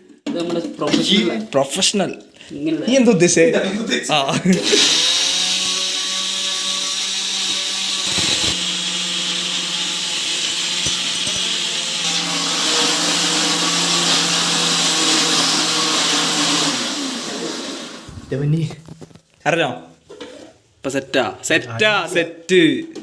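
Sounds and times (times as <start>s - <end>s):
mixer grinder running: 4.5s - 18.3s.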